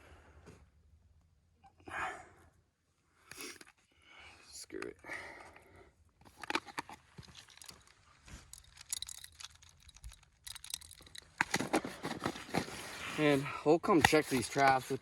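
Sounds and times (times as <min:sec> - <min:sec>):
hands handling a metal trap: 0:06.3 - 0:12.8.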